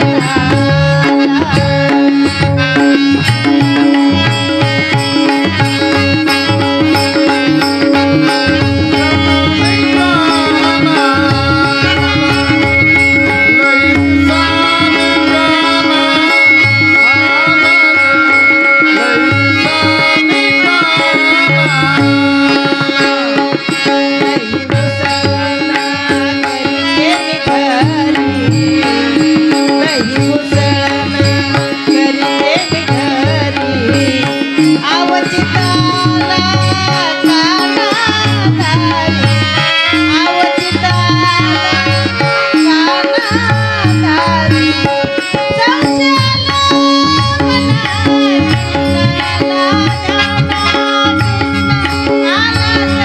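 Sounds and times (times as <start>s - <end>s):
hand drums: 0.0s - 53.0s
steady drone: 0.1s - 23.5s
gliding melodic lead: 1.0s - 53.0s.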